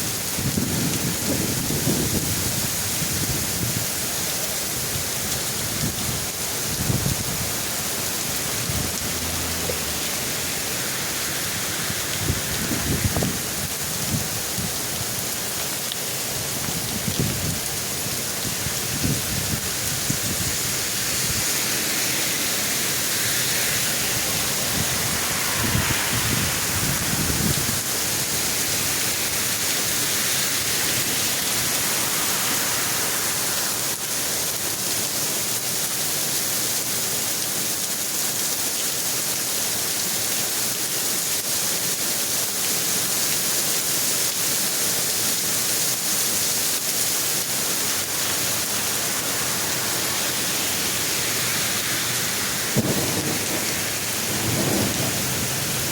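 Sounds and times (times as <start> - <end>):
heavy rain pouring: 0.0 - 55.9
thunder rumbling: 19.0 - 31.9, 50.7 - 55.9.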